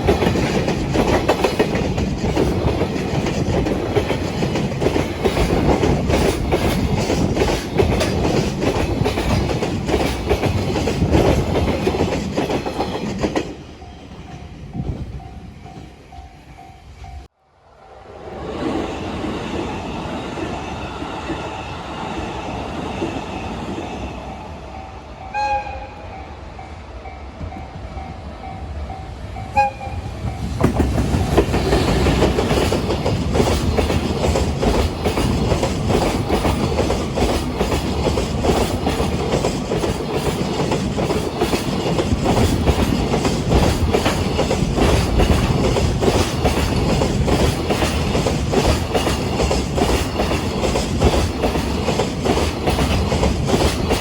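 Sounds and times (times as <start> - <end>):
train wheels clattering over rail joints: 0.0 - 13.6, 30.2 - 54.0
freight train rumble: 0.0 - 54.0
train horn toots: 25.2 - 26.2, 29.4 - 30.4.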